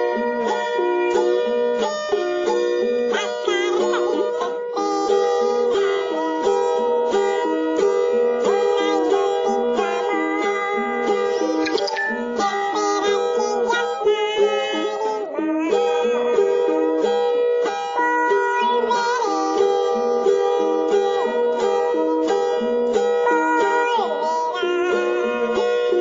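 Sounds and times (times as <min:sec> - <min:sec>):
plucked-string accompaniment: 0:00.0 - 0:26.0
gliding melody: 0:11.3 - 0:12.5.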